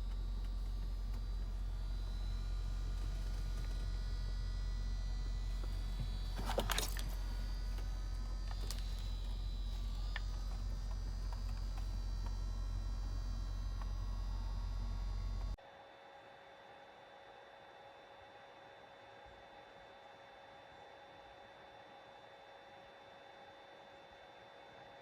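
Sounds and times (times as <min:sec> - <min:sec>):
steady low hum: 0:00.0 - 0:15.6
faint high-pitched whine: 0:00.0 - 0:25.0
crackle of handling noise: 0:05.1 - 0:14.0.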